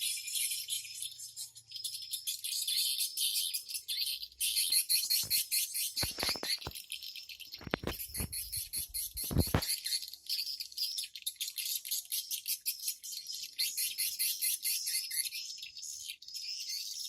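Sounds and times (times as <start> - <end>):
swiftlets chirping: 7.6 - 9.8.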